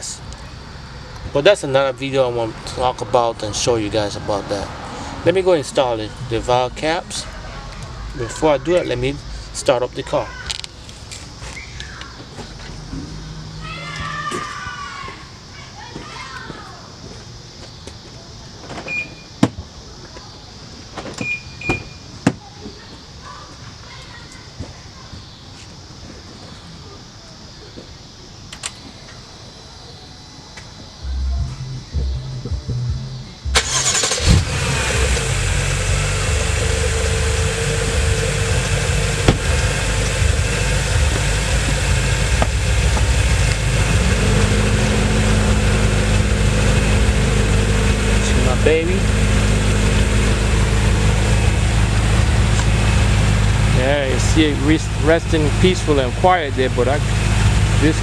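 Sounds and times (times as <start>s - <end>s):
car engine starting and idling: 0.0s - 14.4s, 31.0s - 58.0s
car door clicks: 39.2s - 39.6s.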